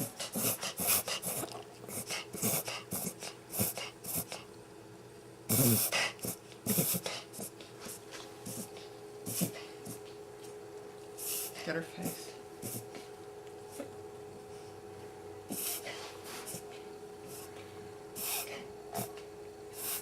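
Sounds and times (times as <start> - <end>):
puppy coughing: 0.0 - 4.5, 5.5 - 7.5, 8.4 - 10.0, 11.2 - 12.9, 15.5 - 16.7, 18.2 - 19.2.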